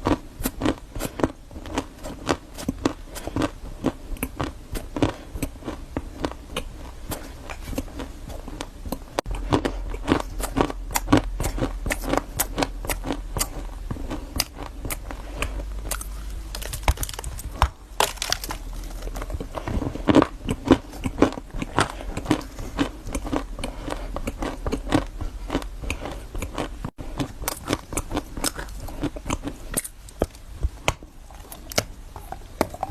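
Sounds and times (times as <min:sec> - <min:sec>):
chewing food crunches: 0:00.0 - 0:30.5.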